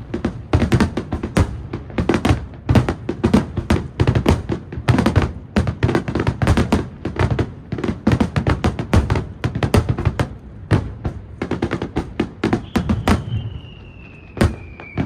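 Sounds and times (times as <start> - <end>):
fireworks shells bursting: 11.2 - 15.0.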